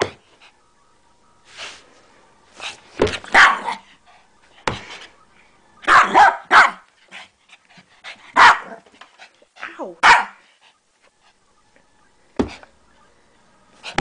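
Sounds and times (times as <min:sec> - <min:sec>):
small dog yapping: 0:03.3 - 0:03.8, 0:05.9 - 0:06.8, 0:08.4 - 0:08.8, 0:10.0 - 0:10.4.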